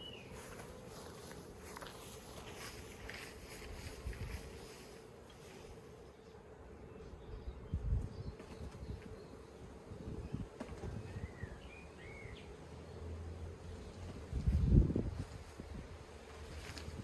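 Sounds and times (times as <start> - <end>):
honeybees buzzing: 0.0 - 17.0
wind rumbling on microphone: 3.4 - 4.7, 7.5 - 9.1, 9.8 - 11.6, 14.0 - 17.0.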